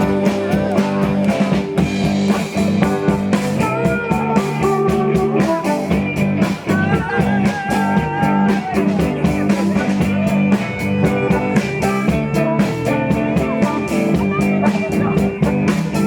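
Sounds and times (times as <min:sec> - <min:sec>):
guitars playing: 0:00.0 - 0:16.0
steady drum beat: 0:00.0 - 0:16.0.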